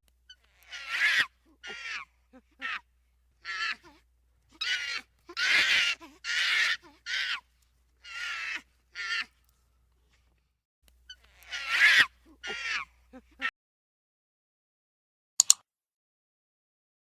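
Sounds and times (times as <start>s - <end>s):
bird harsh rasping calls: 0.3s - 2.8s, 3.4s - 3.9s, 4.5s - 9.4s, 11.1s - 12.9s.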